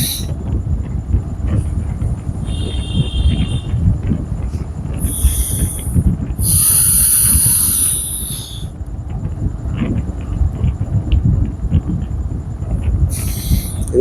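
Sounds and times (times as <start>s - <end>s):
breath hissing through nose: 0.0s - 0.3s, 5.0s - 8.8s, 13.1s - 14.0s
steady low rumble: 0.0s - 14.0s.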